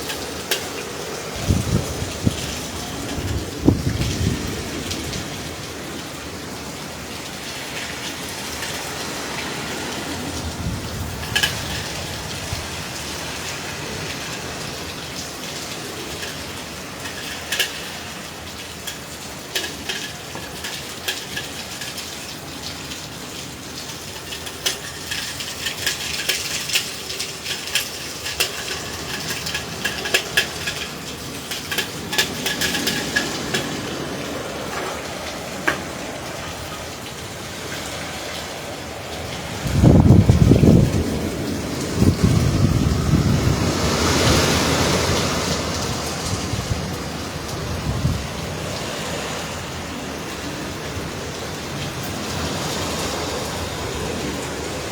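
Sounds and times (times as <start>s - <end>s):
raindrops striking hard surfaces: 0.0s - 54.9s
wind rushing: 1.3s - 5.8s, 38.8s - 49.9s.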